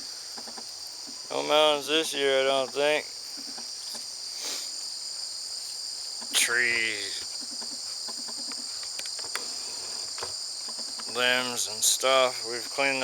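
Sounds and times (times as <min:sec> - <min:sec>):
insects chirring: 0:00.0 - 0:13.0.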